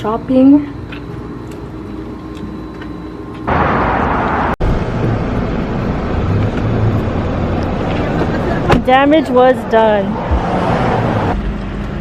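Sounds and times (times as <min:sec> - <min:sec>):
vehicle rumble and rushing noise: 0:03.5 - 0:12.0.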